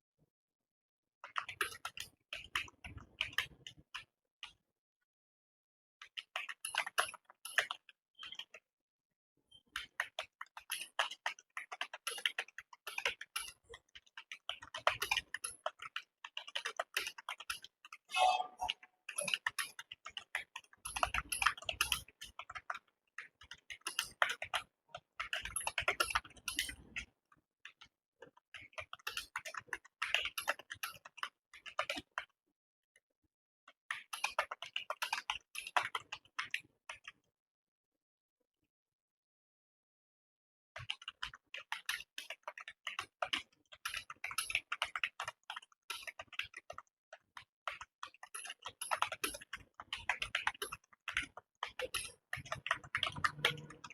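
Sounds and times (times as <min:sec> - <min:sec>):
keyboard typing: 0:17.6 - 0:19.5, 0:48.4 - 0:53.9.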